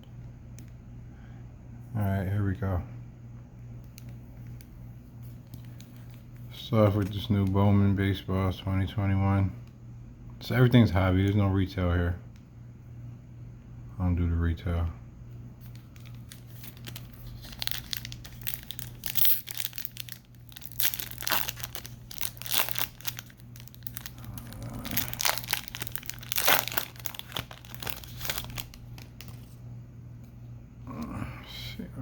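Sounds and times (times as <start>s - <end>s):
foil wrapper tearing and crinkling: 15.6s - 29.5s.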